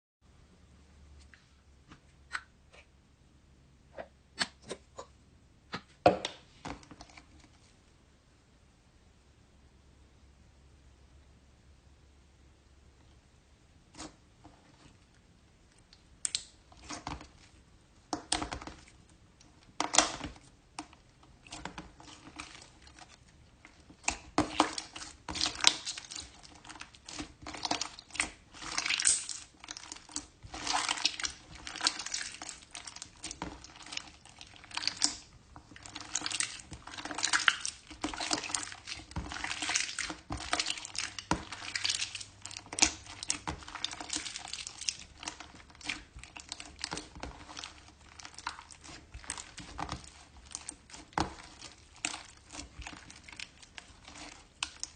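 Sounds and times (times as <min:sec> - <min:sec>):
slime squishing with sticky pops: 0:15.8 - 0:54.9.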